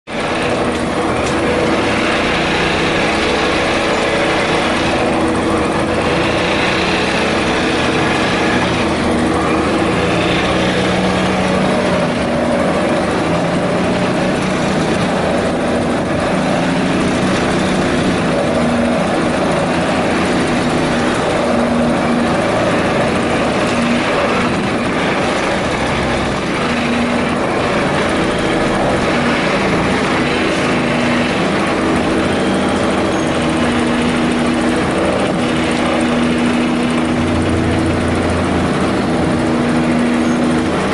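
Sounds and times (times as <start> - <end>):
vibratory pile hammer drone: 0.0 - 40.9.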